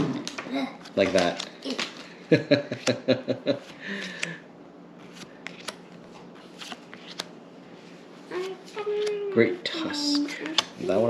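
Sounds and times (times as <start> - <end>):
cards being flipped through: 0.2 - 2.1, 5.0 - 7.4, 8.3 - 9.3, 10.1 - 10.9
cards clicking and snapping: 5.0 - 5.9, 6.6 - 7.3, 10.3 - 10.8.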